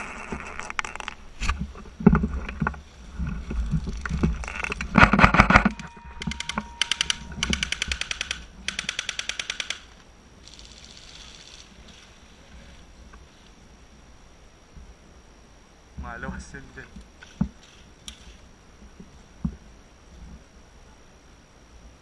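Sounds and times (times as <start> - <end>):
full-auto airsoft bursts: 5.0 - 12.1.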